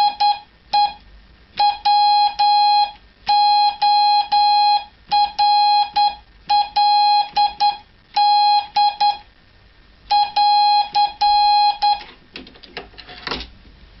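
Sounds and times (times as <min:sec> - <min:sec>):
morse code beep tone: 0:00.0 - 0:01.0, 0:01.6 - 0:09.2, 0:10.1 - 0:12.0.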